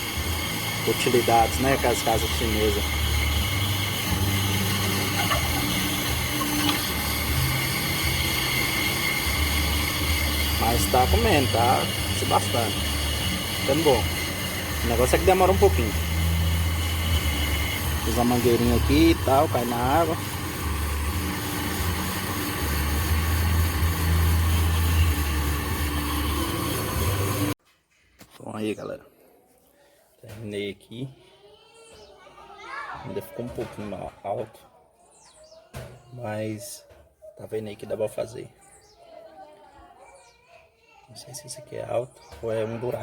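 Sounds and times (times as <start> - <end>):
stone grinding brake disc: 0.0 - 27.6.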